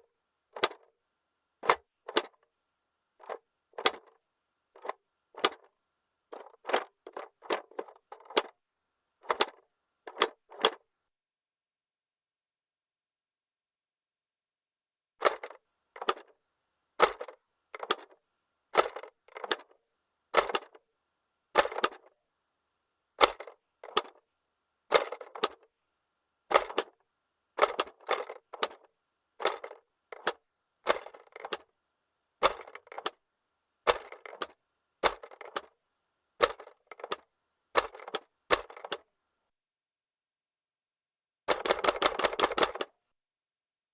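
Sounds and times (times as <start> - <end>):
plastic toy clock clicking: 0.6 - 0.9, 1.6 - 2.4, 3.2 - 4.1, 4.8 - 5.7, 6.3 - 8.6, 9.2 - 10.8, 15.2 - 16.3, 17.0 - 18.2, 18.8 - 19.7, 20.4 - 20.8, 21.6 - 22.1, 23.2 - 24.2, 24.9 - 25.6, 26.5 - 27.0, 27.6 - 31.7, 32.4 - 33.2, 33.9 - 35.7, 36.4 - 39.1, 41.5 - 42.9.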